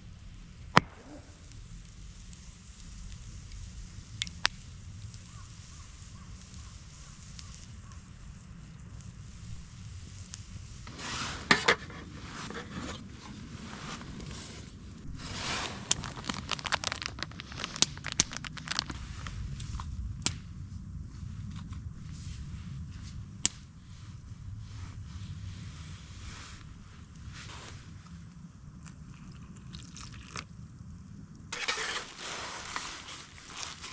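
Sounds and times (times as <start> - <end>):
packaging crinkling and tearing: 15.1 - 19.8, 31.6 - 33.9.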